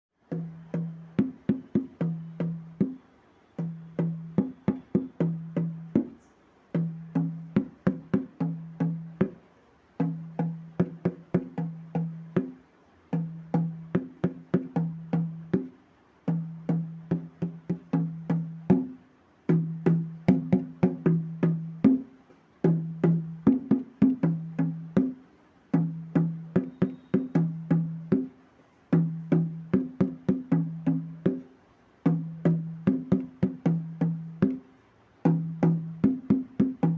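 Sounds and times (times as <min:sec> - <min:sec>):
hand drum rhythm: 0:00.2 - 0:36.9.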